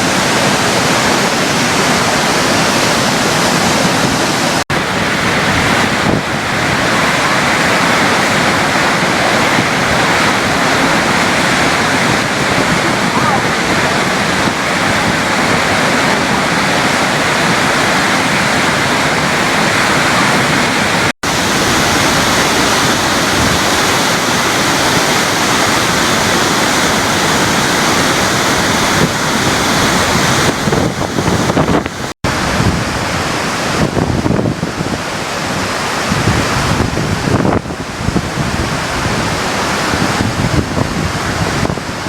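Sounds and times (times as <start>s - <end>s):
waterfall roaring: 0.0s - 42.0s.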